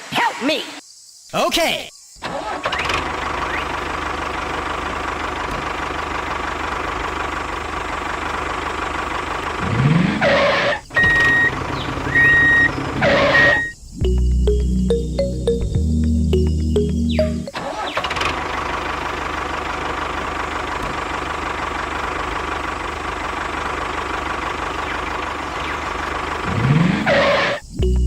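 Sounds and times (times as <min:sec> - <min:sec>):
small engine revving: 0:09.4 - 0:13.7, 0:24.6 - 0:27.6
short high-pitched beeps: 0:13.4 - 0:17.6.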